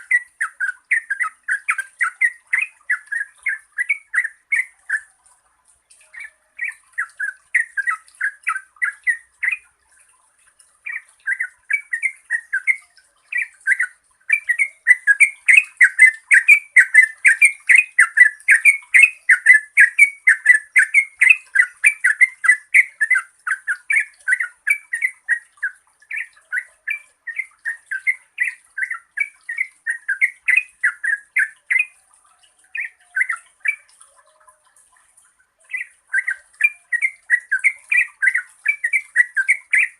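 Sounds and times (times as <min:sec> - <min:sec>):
bulbul singing: 0:00.0 - 0:39.9.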